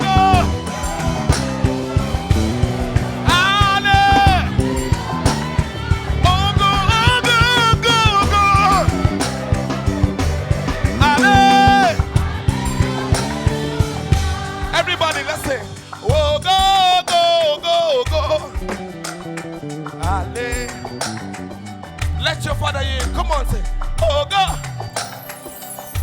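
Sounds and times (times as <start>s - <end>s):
person singing with vibrato: 0.0s - 18.8s
gospel band playing: 0.0s - 26.0s.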